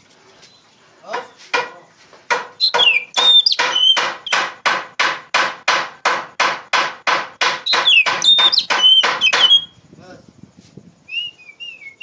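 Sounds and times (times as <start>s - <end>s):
bird singing harsh rasping notes: 0.4s - 4.8s, 7.4s - 9.9s
bird whistled notes: 2.6s - 4.4s, 7.6s - 9.8s, 11.0s - 12.0s.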